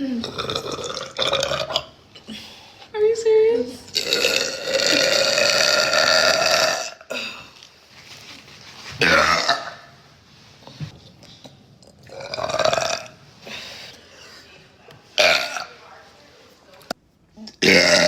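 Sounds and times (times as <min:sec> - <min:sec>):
girl burping loudly: 0:00.0 - 0:01.9, 0:03.9 - 0:07.5, 0:12.1 - 0:13.2, 0:17.5 - 0:18.0.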